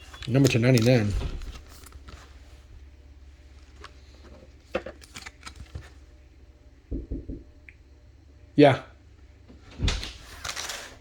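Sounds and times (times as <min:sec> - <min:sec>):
trading cards clicking and rustling: 0:00.0 - 0:02.4, 0:03.6 - 0:06.0, 0:10.0 - 0:11.0.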